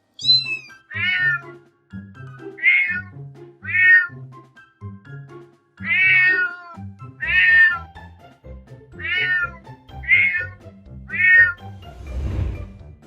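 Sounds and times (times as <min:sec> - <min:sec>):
background music: 0:00.0 - 0:13.0
cat meowing: 0:00.2 - 0:01.5, 0:02.6 - 0:03.1, 0:03.7 - 0:04.1, 0:05.8 - 0:07.9, 0:09.0 - 0:11.6.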